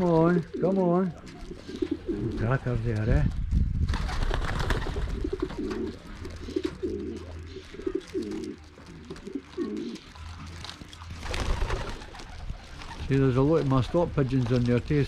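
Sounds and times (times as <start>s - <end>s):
pigeons cooing: 0.0s - 2.9s, 4.0s - 14.3s.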